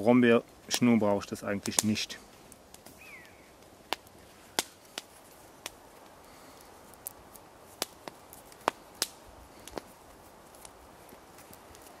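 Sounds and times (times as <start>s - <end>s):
faint steady hiss: 0.0s - 12.0s
sharp clicks and snaps: 6.6s - 9.9s.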